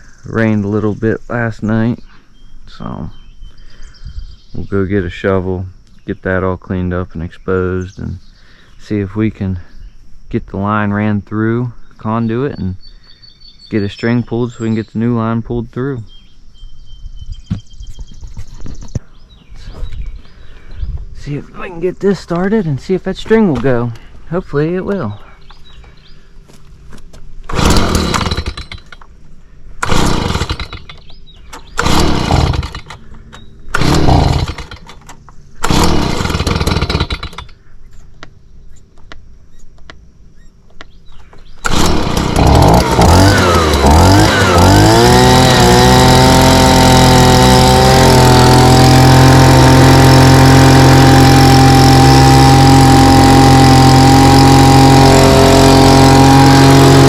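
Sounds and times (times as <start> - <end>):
small engine running: 27.5 - 29.0, 29.8 - 31.1, 31.7 - 35.0, 35.6 - 37.6, 41.6 - 57.0
starter cord pulls: 29.8 - 37.6, 41.6 - 57.0.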